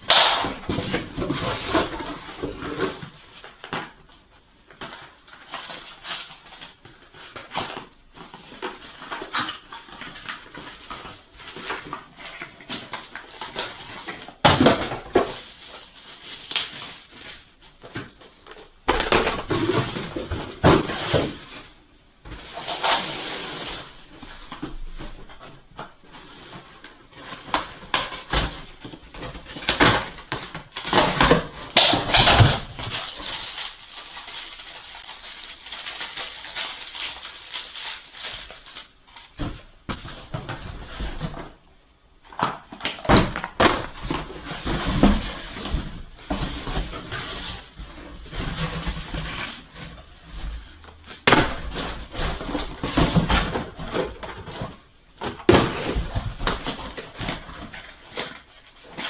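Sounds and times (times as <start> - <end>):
packaging rustling: 0.1 - 41.6.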